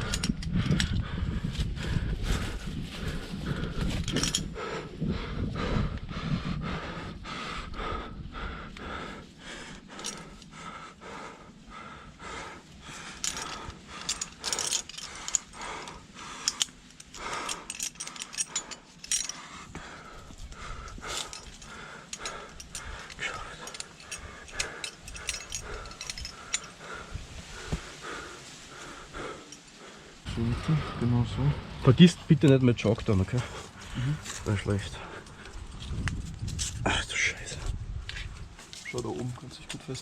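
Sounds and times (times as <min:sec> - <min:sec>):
climbing gear clinking: 0:00.0 - 0:01.1, 0:03.5 - 0:04.7, 0:09.4 - 0:11.4, 0:12.0 - 0:30.2, 0:31.9 - 0:40.0
heavy breathing: 0:00.0 - 0:38.5.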